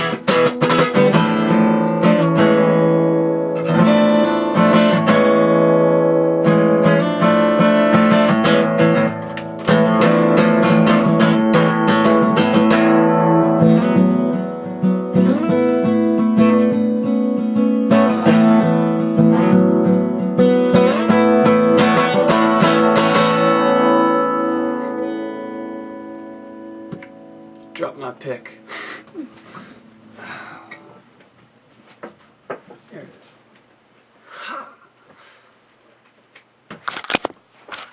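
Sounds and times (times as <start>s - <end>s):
acoustic guitar picked and strummed: 0.0s - 32.7s.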